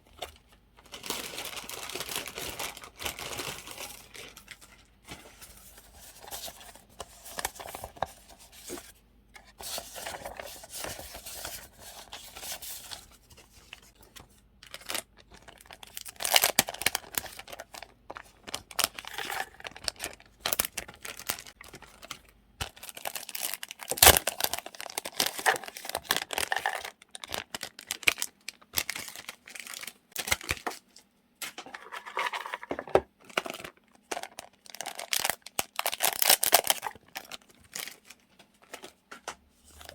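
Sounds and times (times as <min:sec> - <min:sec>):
paper rustling and crinkling: 0:00.1 - 0:28.2.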